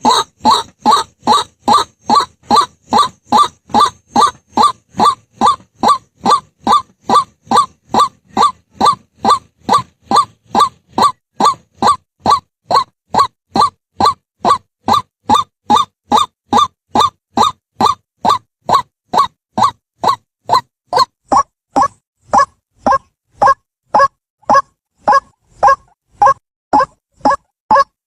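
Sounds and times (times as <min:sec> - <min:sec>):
bird calling harsh note: 0:00.0 - 0:18.4.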